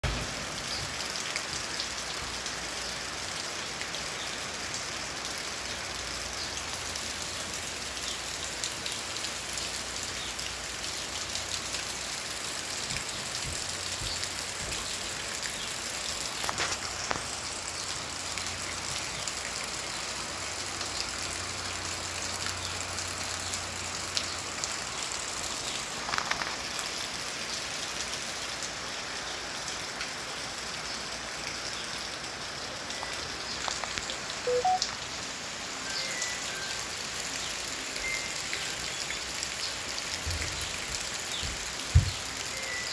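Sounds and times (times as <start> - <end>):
steady rain falling: 0.0 - 42.9.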